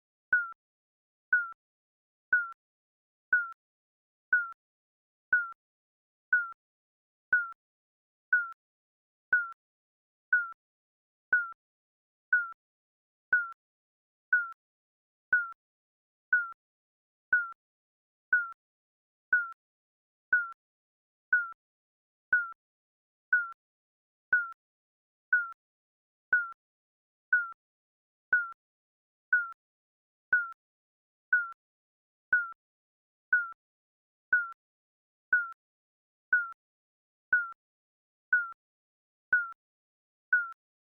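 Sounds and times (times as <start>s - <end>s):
digital timer beeping: 0.3s - 0.6s, 1.3s - 1.6s, 2.3s - 2.6s, 3.3s - 3.6s, 4.3s - 4.6s, 5.3s - 5.6s, 6.3s - 6.6s, 7.3s - 7.6s, 8.3s - 8.6s, 9.3s - 9.6s, 10.3s - 10.6s, 11.3s - 11.6s, 12.3s - 12.6s, 13.3s - 13.6s, 14.3s - 14.6s, 15.3s - 15.6s, 16.3s - 16.6s, 17.3s - 17.6s, 18.3s - 18.6s, 19.3s - 19.6s, 20.3s - 20.6s, 21.3s - 21.6s, 22.3s - 22.6s, 23.3s - 23.6s, 24.3s - 24.6s, 25.3s - 25.6s, 26.3s - 26.6s, 27.3s - 27.6s, 28.3s - 28.6s, 29.3s - 29.6s, 30.3s - 30.6s, 31.3s - 31.6s, 32.3s - 32.6s, 33.3s - 33.6s, 34.3s - 34.6s, 35.3s - 35.6s, 36.3s - 36.6s, 37.3s - 37.6s, 38.3s - 38.6s, 39.3s - 39.6s, 40.3s - 40.6s.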